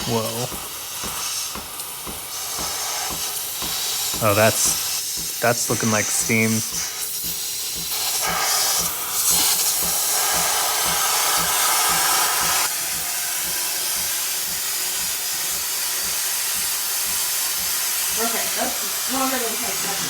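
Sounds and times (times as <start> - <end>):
low regular pulsing: 0.0 - 9.2
espresso machine steam wand hissing: 0.0 - 20.0.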